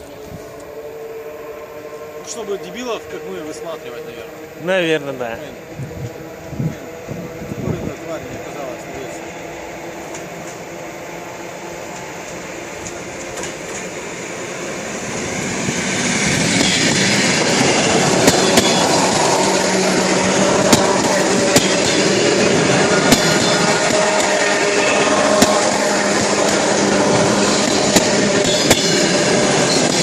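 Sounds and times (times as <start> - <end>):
electric train passing: 0.0 - 30.0
train wheels clicking over rail joints: 8.0 - 30.0.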